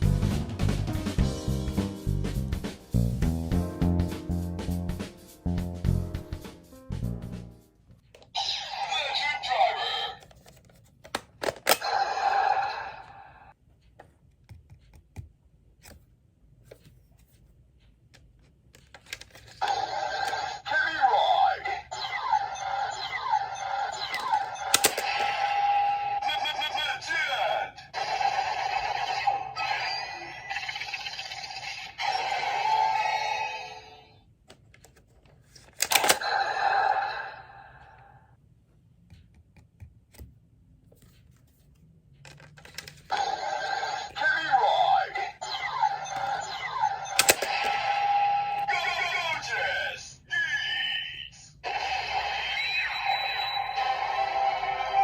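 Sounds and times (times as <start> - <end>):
plastic toy pieces clicking: 24.1 - 25.2, 35.6 - 36.2, 47.1 - 47.8.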